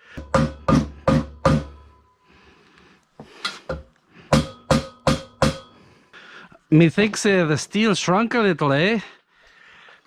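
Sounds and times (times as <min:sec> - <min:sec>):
hammer striking steel: 0:00.0 - 0:02.1, 0:03.4 - 0:05.8.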